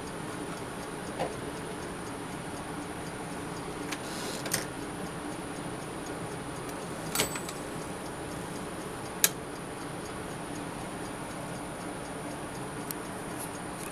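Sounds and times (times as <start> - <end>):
steady hiss: 0.1 - 4.6
typewriter clicks: 7.1 - 7.6.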